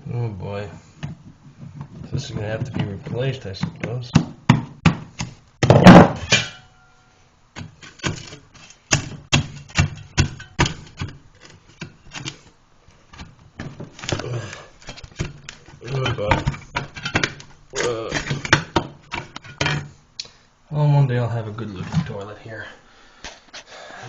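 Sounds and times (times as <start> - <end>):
toilet parts clattering: 5.6 - 6.7, 13.2 - 20.0.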